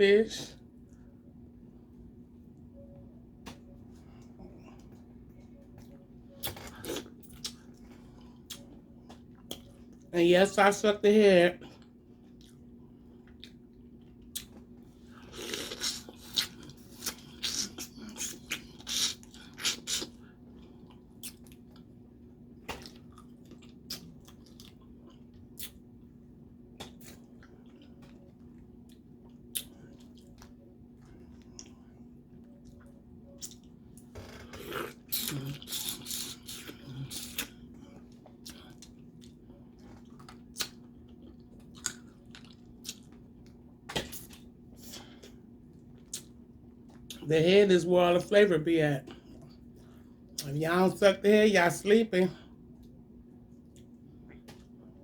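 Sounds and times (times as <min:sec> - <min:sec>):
steady low hum: 0:00.0 - 0:55.0
wet chewing and smacking: 0:04.2 - 0:10.1, 0:11.6 - 0:47.2.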